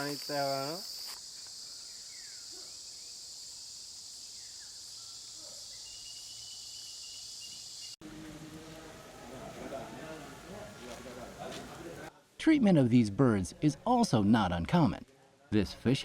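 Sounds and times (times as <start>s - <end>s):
insects chorus: 0.0s - 8.0s.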